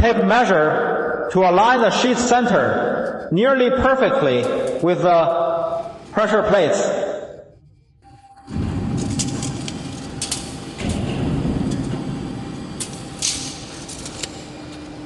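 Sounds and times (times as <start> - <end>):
faint machine hum: 0.0 - 15.0
metal clicks and clanks: 9.0 - 11.9, 12.8 - 14.4.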